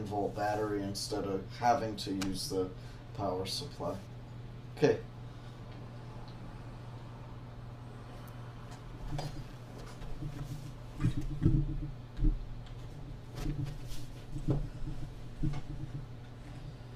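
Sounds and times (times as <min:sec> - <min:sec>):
steady low hum: 0:00.0 - 0:16.9
handling knocks and bumps: 0:09.0 - 0:16.4.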